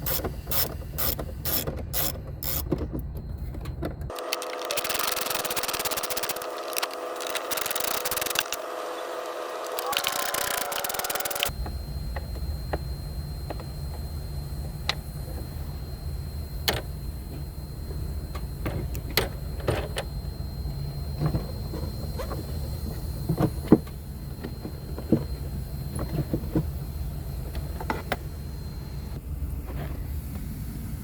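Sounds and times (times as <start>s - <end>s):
steady low hum: 11.3s - 31.0s.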